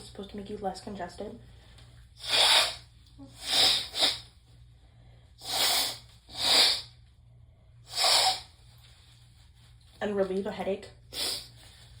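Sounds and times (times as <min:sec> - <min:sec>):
person sneezing: 0:02.2 - 0:04.3.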